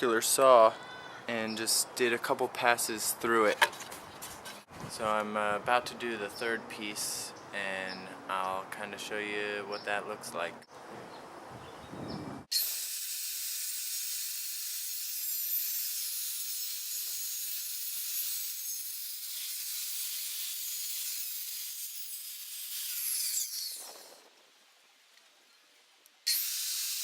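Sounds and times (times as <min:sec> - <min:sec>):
circular saw cutting wood: 0:12.5 - 0:24.2, 0:26.3 - 0:27.0.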